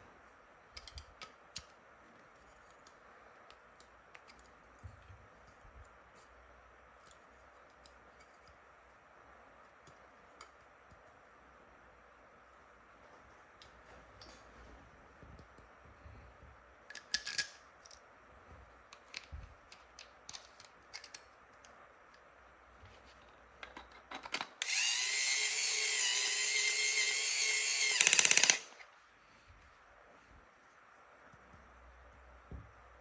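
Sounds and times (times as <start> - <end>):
toy electric drill whirring: 24.6 - 28.8
plastic toy pieces clicking: 27.8 - 28.7.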